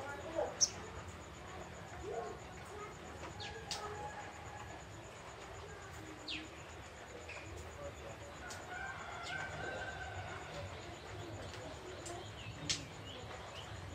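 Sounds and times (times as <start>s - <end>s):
rooster crowing: 8.7s - 10.5s.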